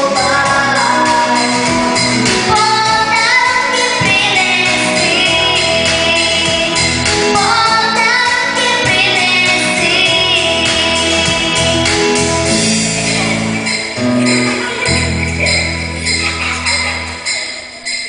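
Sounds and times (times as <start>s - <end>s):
woman singing: 0.0s - 12.4s
instrumental backing music: 0.0s - 18.0s.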